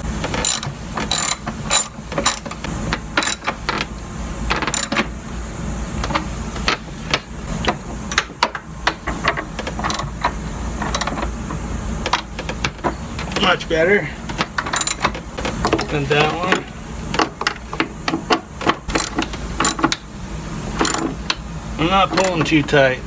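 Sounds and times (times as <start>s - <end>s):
hand tools clicking and knocking: 0.0s - 3.9s, 4.5s - 5.1s, 6.0s - 20.0s, 20.8s - 21.4s, 22.0s - 22.6s
ratchet clicking: 0.2s - 3.9s, 4.5s - 5.1s, 9.3s - 11.3s, 12.0s - 13.5s, 14.3s - 17.9s, 18.9s - 20.0s, 20.8s - 21.4s.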